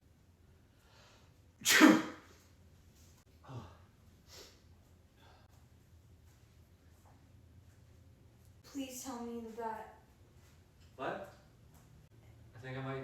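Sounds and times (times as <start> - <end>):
man sneezing: 1.6 - 2.4
quiet breathy sounds: 3.2 - 6.0.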